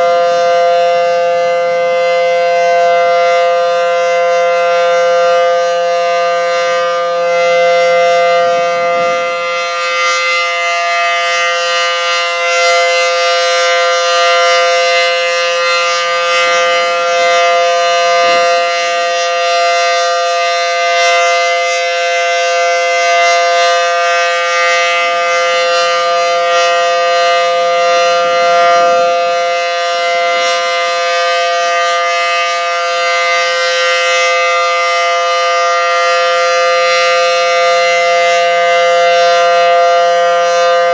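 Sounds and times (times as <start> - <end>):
warning siren steady two-note chord: 0.0 - 40.9.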